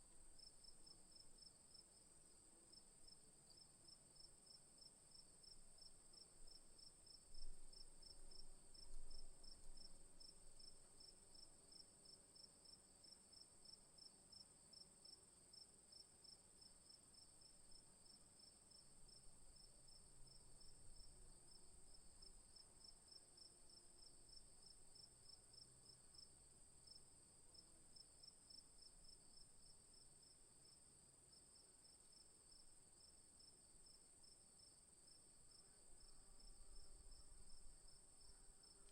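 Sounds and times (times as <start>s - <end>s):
crickets chirping: 12.4s - 38.9s.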